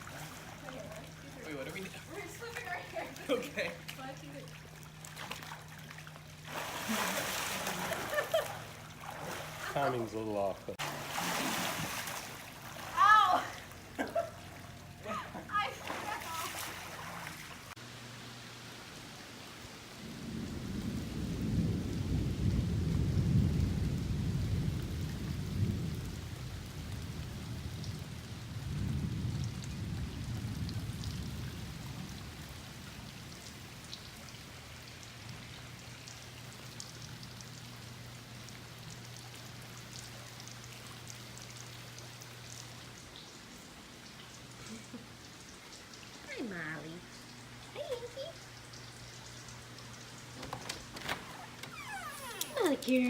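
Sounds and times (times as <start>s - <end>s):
rain falling: 0.0s - 10.9s, 12.7s - 16.7s, 17.6s - 53.0s
steady low hum: 0.0s - 23.5s
low thunder rolls: 20.0s - 33.4s.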